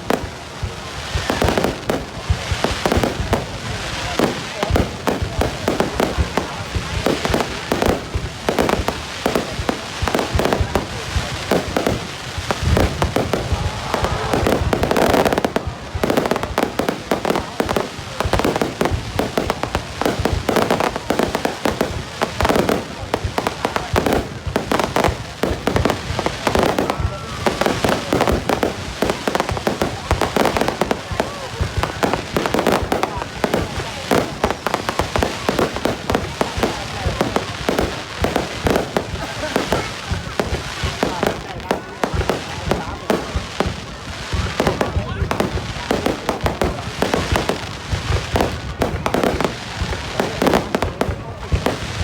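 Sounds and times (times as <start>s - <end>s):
fireworks bangs and pops: 0.0s - 52.0s.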